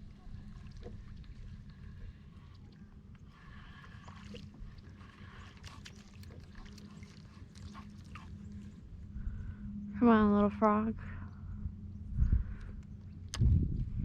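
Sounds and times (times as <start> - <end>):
low steady hum: 0.0 - 14.0
clicks and knocks in a kayak: 0.3 - 8.6.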